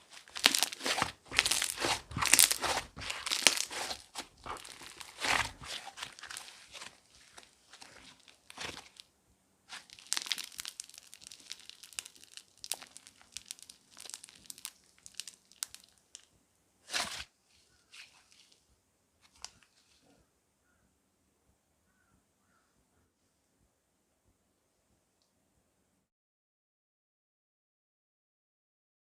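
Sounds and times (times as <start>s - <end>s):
crunchy slime crackling and popping: 0.0s - 9.1s, 9.7s - 16.3s.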